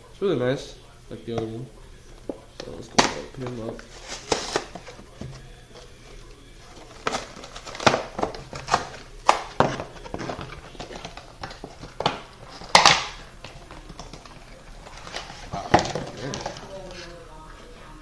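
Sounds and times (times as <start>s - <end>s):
plastic packaging being opened: 2.6s - 6.0s, 6.6s - 17.1s.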